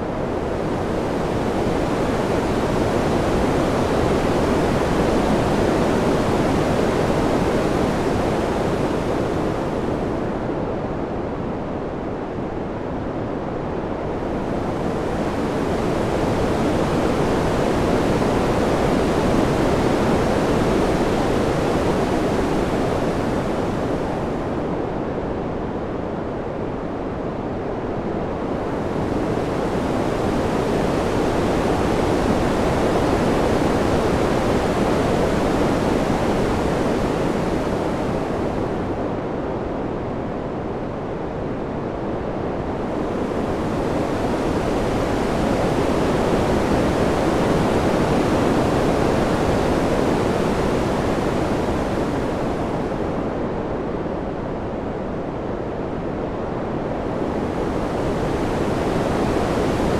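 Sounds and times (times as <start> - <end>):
rushing wind: 0.0 - 59.9.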